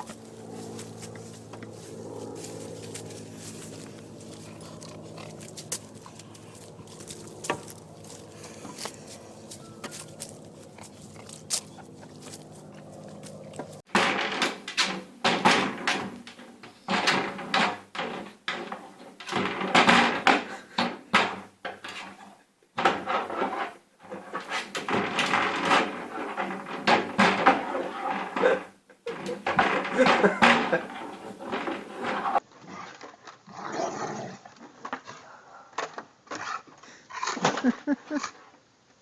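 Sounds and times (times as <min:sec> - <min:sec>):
wooden stick knocking and scraping: 0:00.0 - 0:20.4.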